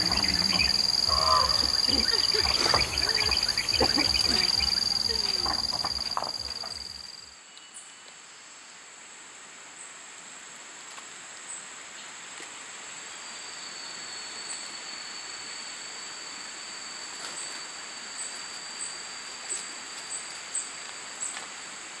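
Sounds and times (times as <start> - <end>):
insects high-pitched drone: 0.0 - 7.4, 13.1 - 21.9
insects lower whine: 0.0 - 8.8, 12.8 - 22.0.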